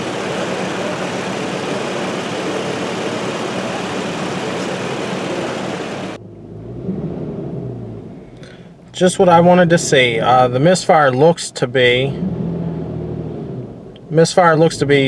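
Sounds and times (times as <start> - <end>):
car engine idling with misfire: 0.0 - 6.2
low hum: 0.0 - 6.2.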